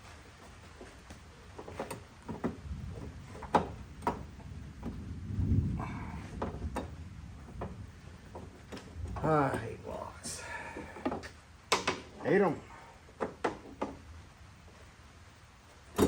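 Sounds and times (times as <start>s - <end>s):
metal clicks and knocks: 6.4s - 9.6s, 11.0s - 12.2s.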